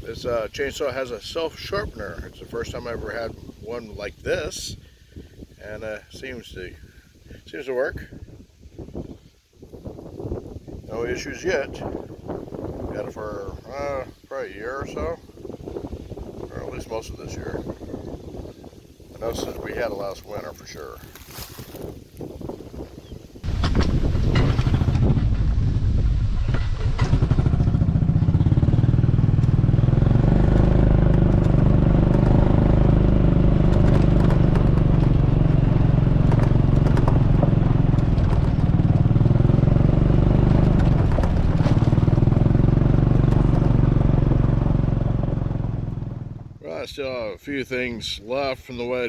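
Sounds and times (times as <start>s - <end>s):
small gasoline engine running: 26.6s - 46.5s.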